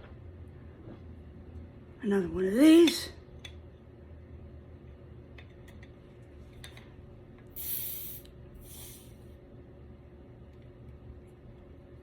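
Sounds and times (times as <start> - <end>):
hiss of escaping gas: 7.6 - 9.2.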